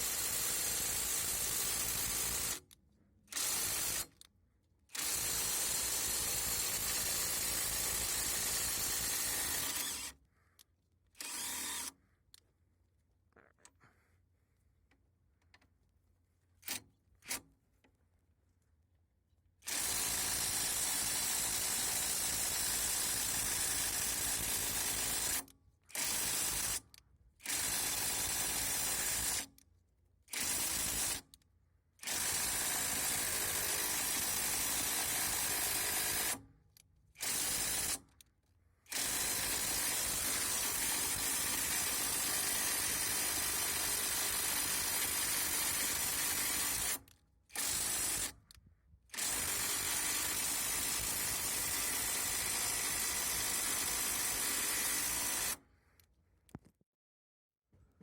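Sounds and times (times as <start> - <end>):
cordless impact wrench running: 0.0 - 2.6, 3.3 - 4.2, 4.9 - 10.2, 11.2 - 12.0, 19.7 - 26.8, 27.4 - 29.6, 30.3 - 31.4, 32.0 - 36.4, 37.2 - 38.2, 38.9 - 55.6.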